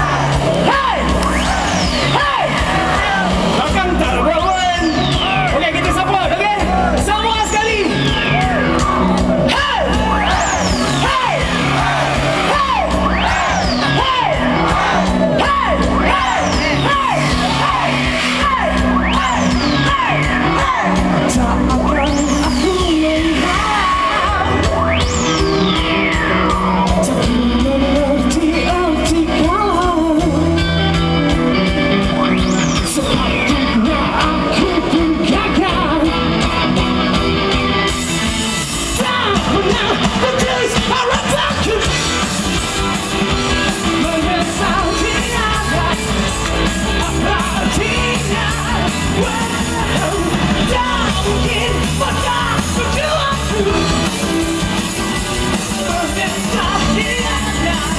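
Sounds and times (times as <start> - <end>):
rock band playing: 0.0 - 57.9
person singing: 9.4 - 24.7, 25.4 - 31.0, 43.6 - 57.9.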